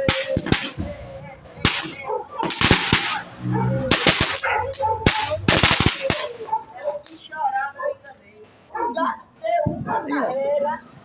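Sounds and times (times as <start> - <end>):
firecrackers popping and banging: 0.0 - 7.3.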